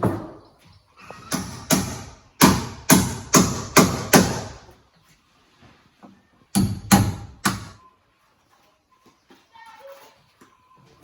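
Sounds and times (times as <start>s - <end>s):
hammer striking wood: 1.3s - 4.7s, 6.5s - 7.8s.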